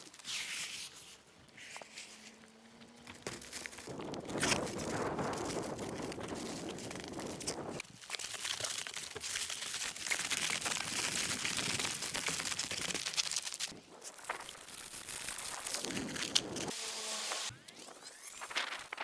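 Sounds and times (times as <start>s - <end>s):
plastic wrap crinkling: 0.0s - 16.8s.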